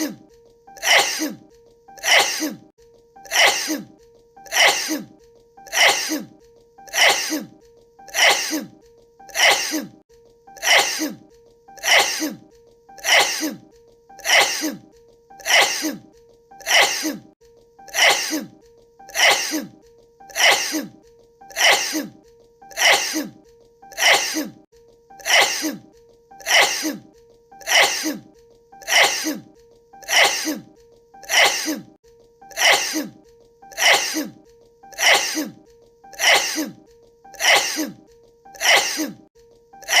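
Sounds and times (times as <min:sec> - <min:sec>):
sharp sneeze: 0:00.8 - 0:01.4, 0:02.0 - 0:02.7, 0:03.3 - 0:03.9, 0:04.5 - 0:05.1, 0:05.7 - 0:06.3, 0:06.9 - 0:07.5, 0:08.2 - 0:08.7, 0:09.4 - 0:10.0, 0:10.6 - 0:11.2, 0:11.8 - 0:12.4, 0:13.0 - 0:13.6, 0:14.2 - 0:14.8, 0:15.4 - 0:16.0, 0:16.6 - 0:17.3, 0:17.9 - 0:18.5, 0:19.2 - 0:19.7, 0:20.3 - 0:21.0, 0:21.6 - 0:22.2, 0:22.8 - 0:23.4, 0:24.0 - 0:24.6, 0:25.2 - 0:25.8, 0:26.4 - 0:27.1, 0:27.7 - 0:28.3, 0:28.9 - 0:29.5, 0:30.1 - 0:30.7, 0:31.3 - 0:31.9, 0:32.6 - 0:33.2, 0:33.8 - 0:34.4, 0:35.0 - 0:35.6, 0:36.2 - 0:36.8, 0:37.4 - 0:38.0, 0:38.6 - 0:39.2.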